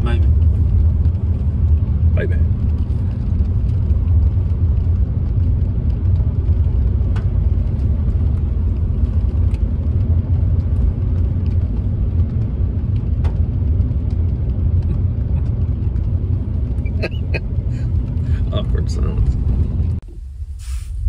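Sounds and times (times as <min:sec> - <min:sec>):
pickup truck idling: 0:16.5 - 0:19.2.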